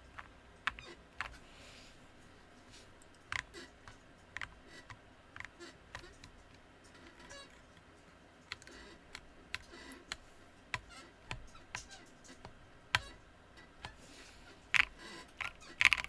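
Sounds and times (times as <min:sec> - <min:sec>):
mechanical keyboard key presses: 0:00.0 - 0:01.4, 0:03.2 - 0:07.8, 0:10.8 - 0:14.0, 0:14.7 - 0:16.0.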